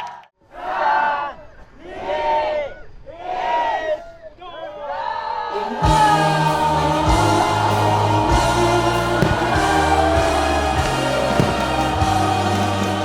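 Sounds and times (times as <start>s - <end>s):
song with sung vocal: 5.4s - 13.0s
held bass notes: 5.9s - 13.0s
deep thump: 9.2s - 10.2s, 11.4s - 12.2s.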